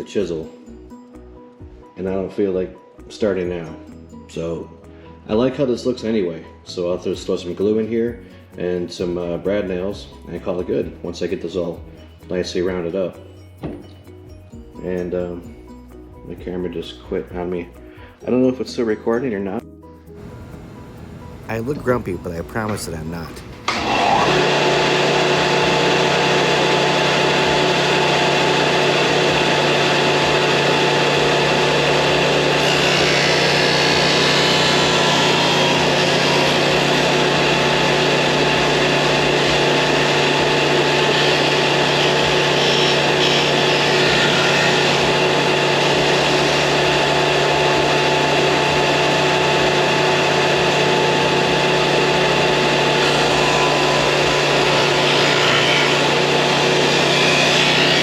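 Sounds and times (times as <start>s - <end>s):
electric disc sander running: 20.2s - 58.0s
wood grinding against sander disc: 50.7s - 58.0s.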